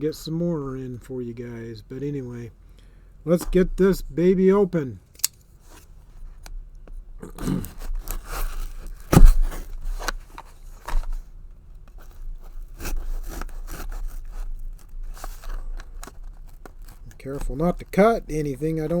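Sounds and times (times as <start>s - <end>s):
blade cutting cardboard box: 7.5s - 11.2s, 12.0s - 17.5s
sharp knock: 9.1s - 9.6s.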